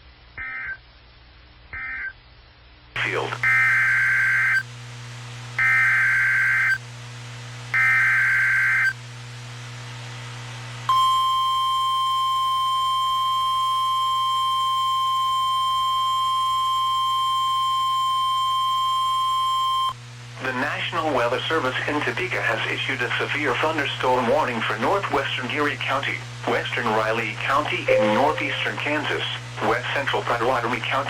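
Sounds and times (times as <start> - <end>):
warbling data tones: 27.9 - 29.1
steady attention tone: 27.9 - 29.4.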